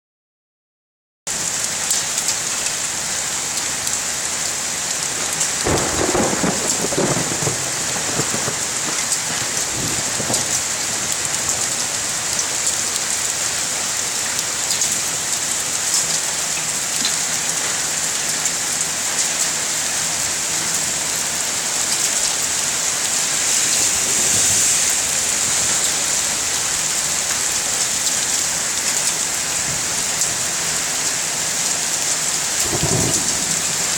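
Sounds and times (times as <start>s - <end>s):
heavy rain pouring: 1.3s - 33.9s
thunder rumble: 5.6s - 11.9s, 21.2s - 27.8s, 32.6s - 33.9s.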